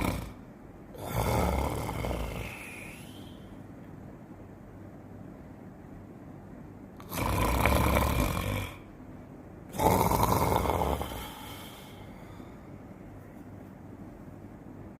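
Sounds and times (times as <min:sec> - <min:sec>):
person snoring: 0:00.0 - 0:03.5, 0:07.0 - 0:08.9, 0:09.7 - 0:12.6
low background noise: 0:00.0 - 0:14.9.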